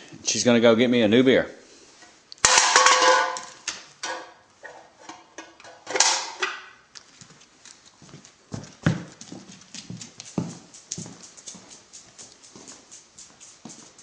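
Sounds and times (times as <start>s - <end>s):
dog claws clicking on floor: 6.9s - 14.0s.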